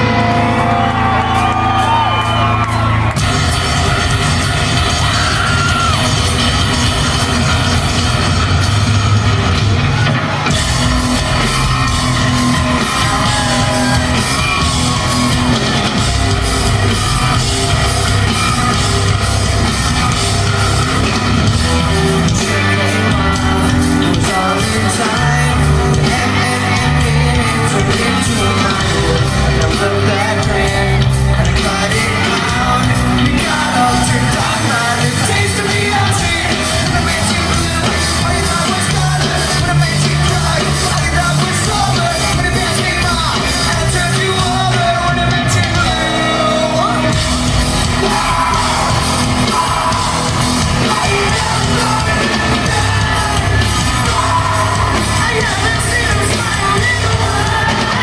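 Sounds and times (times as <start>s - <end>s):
live rock band: 0.0s - 58.0s
lead singer singing: 10.4s - 58.0s.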